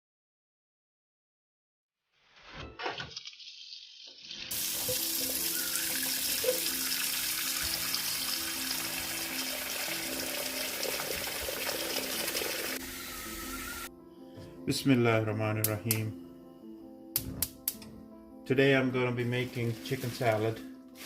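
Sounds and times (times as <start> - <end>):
water running from tap into sink: 3.0 - 13.9
background music of held notes: 4.4 - 21.0.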